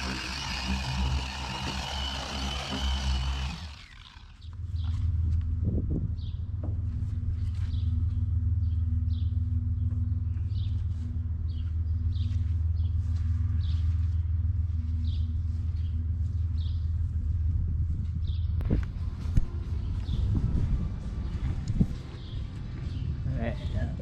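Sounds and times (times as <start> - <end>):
low rumble with hum: 0.0 - 24.0.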